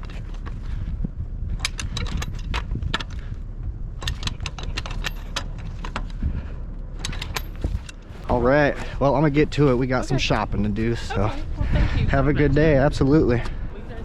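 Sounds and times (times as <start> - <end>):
steady low rumble: 0.0 - 14.0
light metallic clinks and rattles: 1.5 - 8.3.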